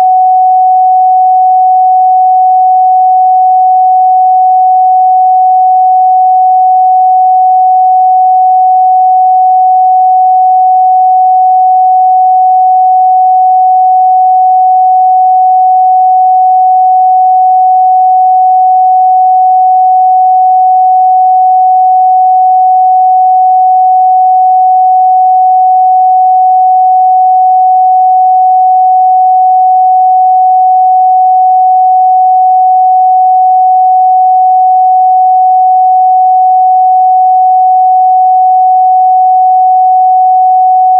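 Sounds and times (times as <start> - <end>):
sine-wave test tone: 0.0 - 40.9.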